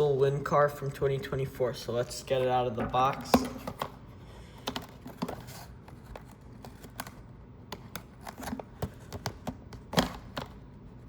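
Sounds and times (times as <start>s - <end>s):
packaging rustling and clicking: 4.6s - 10.6s.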